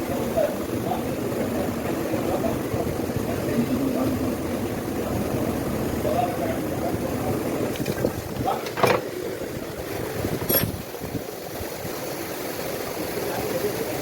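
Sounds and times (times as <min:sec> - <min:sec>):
sharp metallic clinks: 0:10.5 - 0:10.8.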